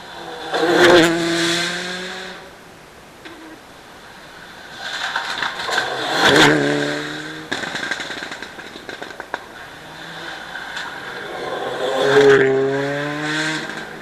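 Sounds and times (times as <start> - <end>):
rally car passing at speed: 0.0 - 2.5, 4.8 - 8.5, 9.6 - 14.0
exhaust crackles: 4.6 - 14.0.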